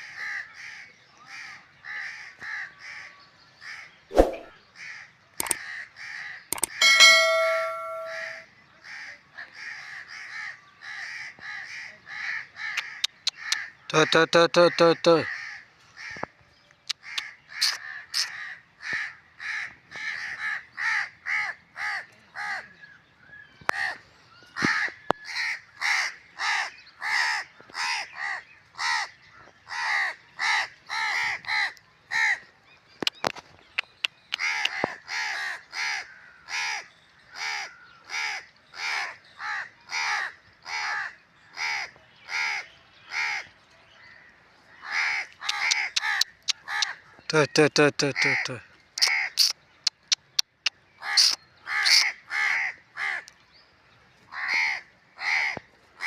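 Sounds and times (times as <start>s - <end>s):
sharp clicks: 5.4s - 5.6s, 6.5s - 8.3s, 33.0s - 34.9s, 45.4s - 46.9s, 49.0s - 51.4s
crows cawing: 15.2s - 16.2s, 17.0s - 22.6s, 34.4s - 36.8s, 44.8s - 47.0s, 51.0s - 53.3s, 54.3s - 55.6s.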